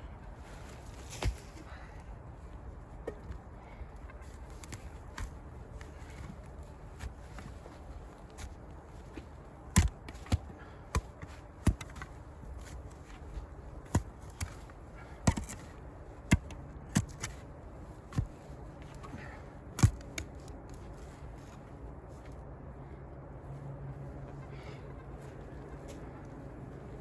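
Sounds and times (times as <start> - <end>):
digging tool striking earth: 1.0 - 1.6, 4.6 - 6.4, 7.0 - 20.8.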